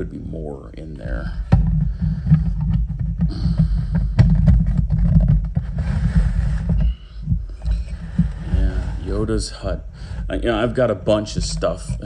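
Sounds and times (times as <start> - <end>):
low rumble of handling noise: 0.0 - 12.0
plastic parts clicking and rustling: 1.4 - 8.4.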